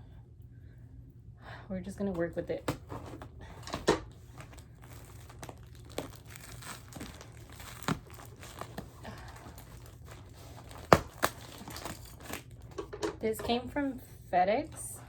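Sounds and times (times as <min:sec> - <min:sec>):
packing material crinkling: 0:03.1 - 0:13.0.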